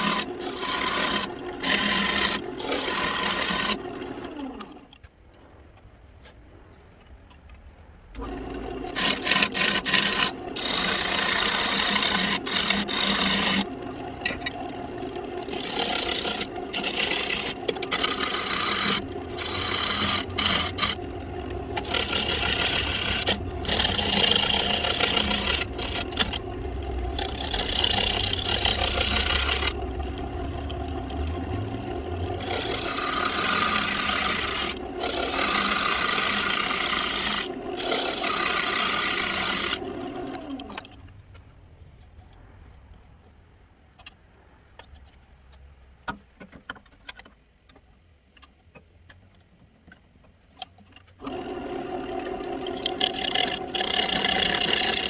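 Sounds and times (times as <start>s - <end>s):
tool rasping against spinning wood: 0.0s - 4.7s, 8.2s - 40.9s, 51.2s - 55.0s
lathe motor hum: 0.0s - 4.8s, 8.2s - 41.3s, 51.2s - 55.0s.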